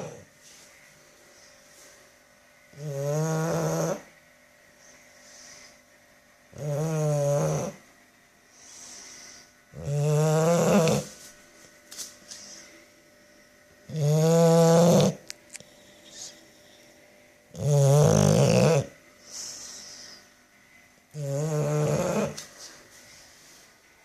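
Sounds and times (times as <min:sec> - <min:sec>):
dog snoring: 0:00.0 - 0:00.3, 0:02.7 - 0:04.2, 0:06.5 - 0:07.9, 0:08.6 - 0:11.2, 0:13.9 - 0:15.2, 0:17.5 - 0:20.2, 0:21.1 - 0:22.4.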